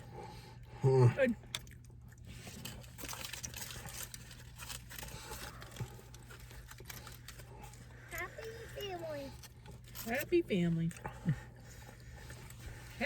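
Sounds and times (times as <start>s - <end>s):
eating noises: 0.0s - 4.1s
low steady hum: 0.0s - 13.0s
paper wrappers crinkling: 1.5s - 13.0s.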